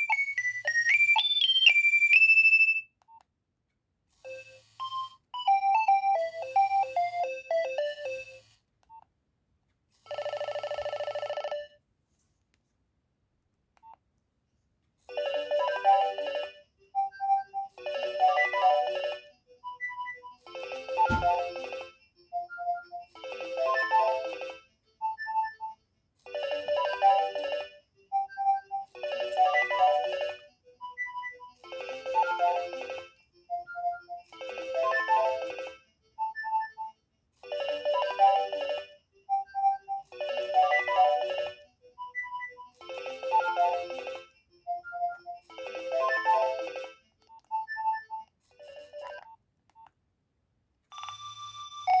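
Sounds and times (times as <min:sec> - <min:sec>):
mobile phone ringtone: 0:00.0 - 0:02.8, 0:04.2 - 0:08.5, 0:10.0 - 0:11.8, 0:15.1 - 0:49.2, 0:50.9 - 0:52.0.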